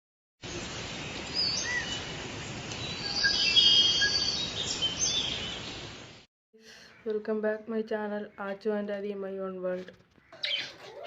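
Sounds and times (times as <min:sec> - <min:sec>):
lovebirds chirping and whistling: 0:01.4 - 0:02.1, 0:02.8 - 0:05.9, 0:10.2 - 0:11.0.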